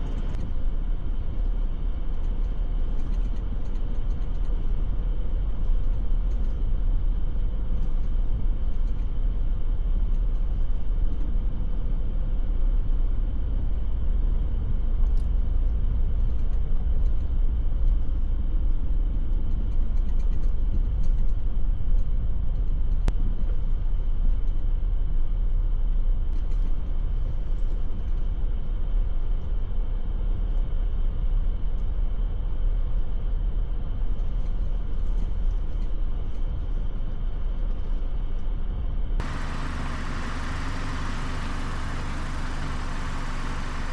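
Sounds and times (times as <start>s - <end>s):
car road and engine rumble: 0.0s - 8.1s, 39.2s - 43.9s.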